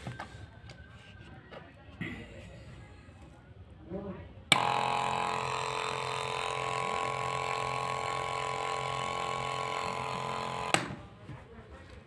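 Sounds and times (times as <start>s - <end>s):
electric pump motor humming: 4.5s - 11.1s.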